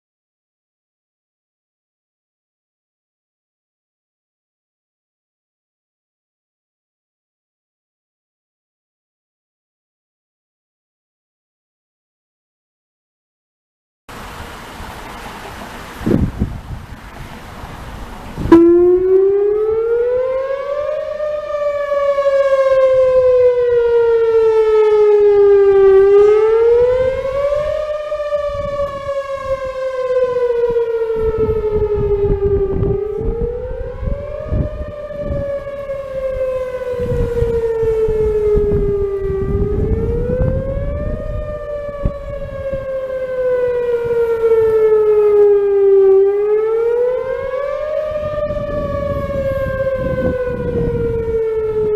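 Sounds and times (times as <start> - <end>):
warning siren wailing: 15.5 - 51.9.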